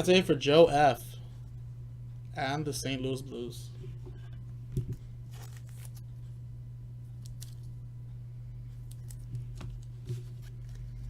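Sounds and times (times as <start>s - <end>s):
low hum: 0.0s - 11.0s
trading cards rustling: 5.3s - 6.1s, 8.8s - 11.0s.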